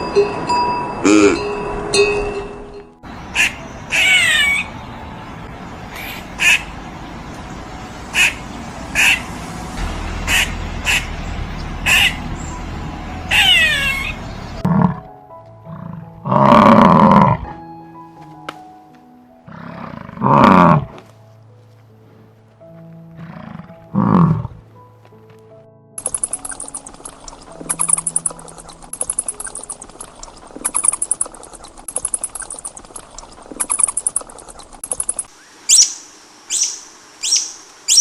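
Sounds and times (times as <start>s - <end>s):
background music: 0.0s - 35.3s
drawn-out animal calls: 3.1s - 17.6s, 21.9s - 24.7s, 26.0s - 35.9s.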